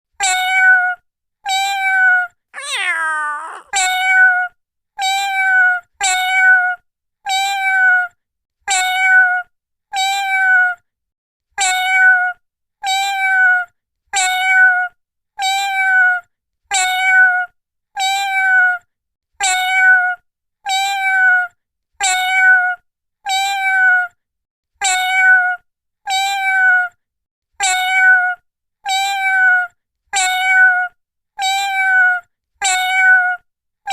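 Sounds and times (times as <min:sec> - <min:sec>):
cat meowing: 0:01.7 - 0:04.3.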